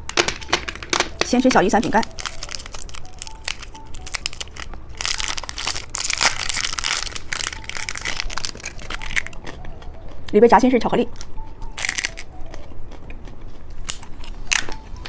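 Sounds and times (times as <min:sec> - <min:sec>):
plastic wrapper crinkling: 0:00.0 - 0:09.6.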